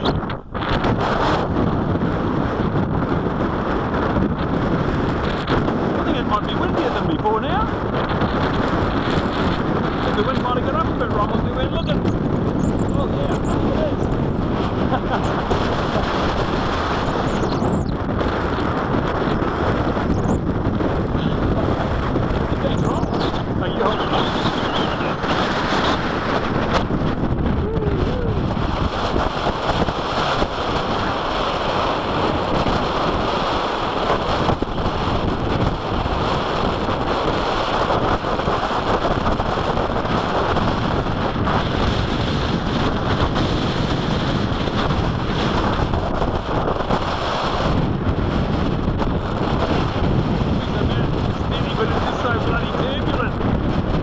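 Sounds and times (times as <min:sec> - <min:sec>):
wind blowing over microphone: 0:00.0 - 0:54.0.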